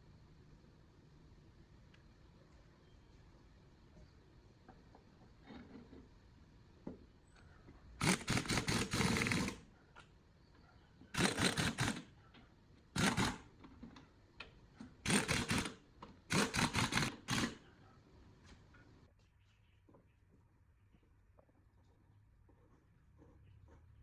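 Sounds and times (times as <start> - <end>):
fast mechanical rattle: 8.0 - 9.6, 11.2 - 12.1, 13.0 - 13.5, 15.0 - 17.7.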